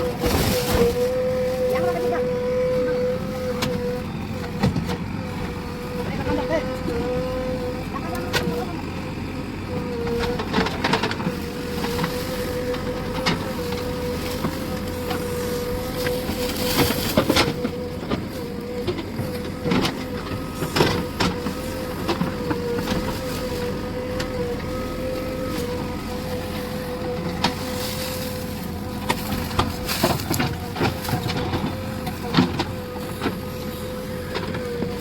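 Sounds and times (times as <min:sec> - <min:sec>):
engine running: 0:00.0 - 0:35.0
machine whine: 0:00.0 - 0:35.0.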